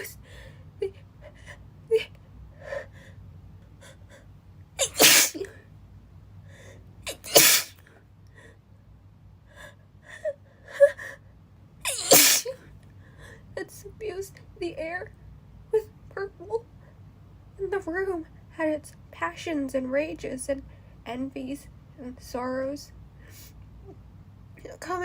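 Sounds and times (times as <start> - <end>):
quiet breath sounds: 0.0 - 1.7, 2.5 - 4.4, 6.4 - 7.0, 7.8 - 8.8, 9.4 - 11.3, 12.8 - 13.6, 20.7 - 21.1
woman sneezing: 4.8 - 5.5, 7.1 - 7.8, 11.9 - 12.6.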